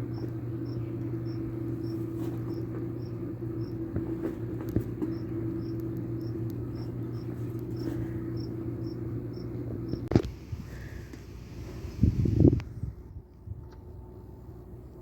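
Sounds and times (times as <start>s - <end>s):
cricket chirping: 0.0s - 3.9s, 5.1s - 10.1s
low mechanical hum: 0.0s - 15.0s.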